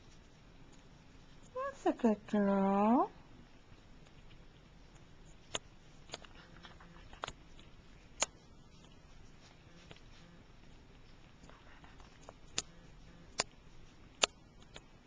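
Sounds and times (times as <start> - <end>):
low room noise: 0.0 - 15.0
cat eating from a dish: 3.8 - 14.9.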